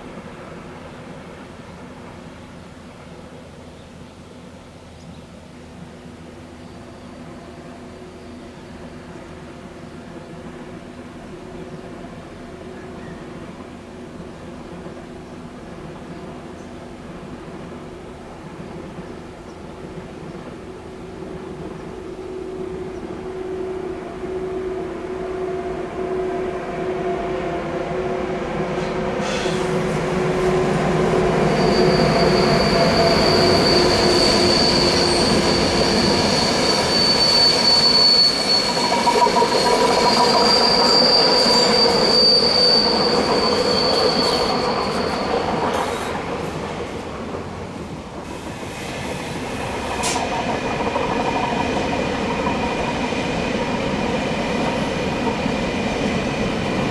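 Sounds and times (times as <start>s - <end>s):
train rolling noise: 0.0s - 56.9s
train wheels squealing: 27.7s - 56.9s.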